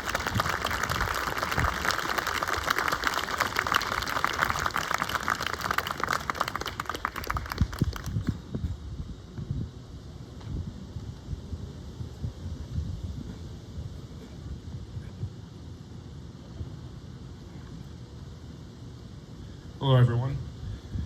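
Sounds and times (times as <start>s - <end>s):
wind rumble on microphone: 0.0s - 5.1s, 5.9s - 18.4s, 20.0s - 21.0s
audience applauding: 0.0s - 8.3s.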